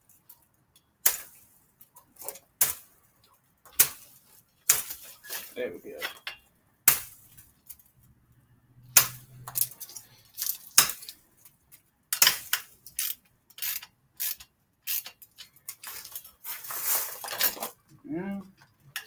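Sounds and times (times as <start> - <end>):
metal tools clinking: 5.0 - 6.5, 9.5 - 11.2.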